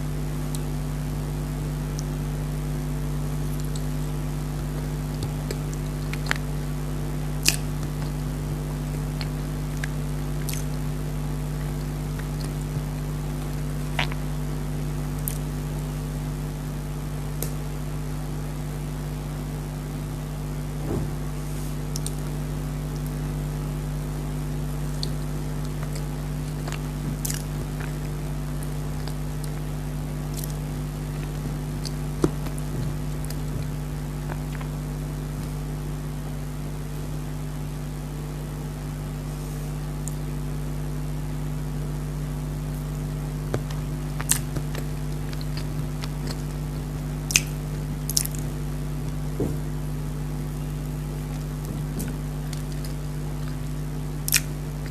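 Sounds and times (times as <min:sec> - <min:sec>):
steady low hum: 0:00.0 - 0:54.9
soft chewing and mouth clicks: 0:03.5 - 0:03.9, 0:04.6 - 0:06.7, 0:07.4 - 0:08.3, 0:08.9 - 0:10.8, 0:11.6 - 0:14.3, 0:21.9 - 0:23.2, 0:24.8 - 0:34.8, 0:43.4 - 0:49.2, 0:51.3 - 0:54.9.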